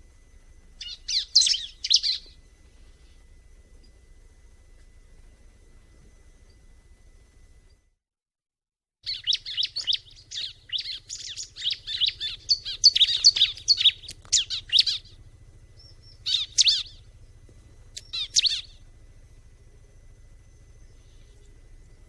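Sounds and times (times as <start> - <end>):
bird chirping high notes: 9.0 - 15.2.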